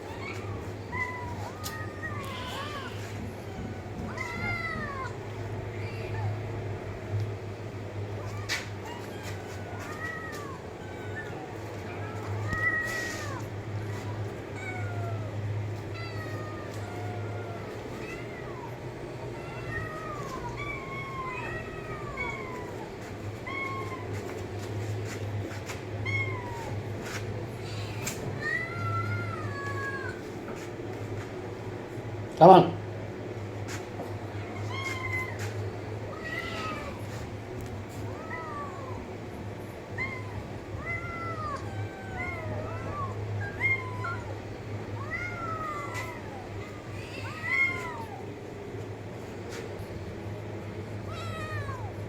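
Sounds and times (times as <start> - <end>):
kittens meowing: 0.0 - 6.4, 8.1 - 30.6, 34.2 - 48.6, 51.0 - 52.0
low steady hum: 0.0 - 52.0
cat meowing: 8.2 - 24.4, 36.1 - 37.1, 45.0 - 48.3, 51.0 - 52.0.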